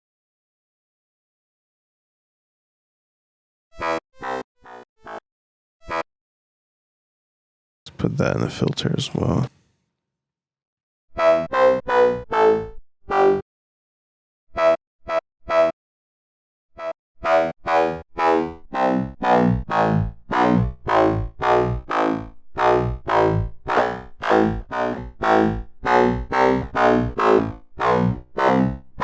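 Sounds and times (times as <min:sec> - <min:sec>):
synthesizer bass notes: 0:17.2 - 0:29.0.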